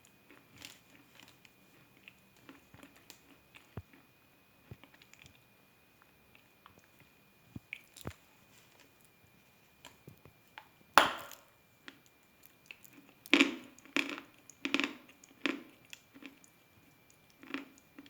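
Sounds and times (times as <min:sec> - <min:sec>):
crunchy chewing: 0:13.8 - 0:18.0.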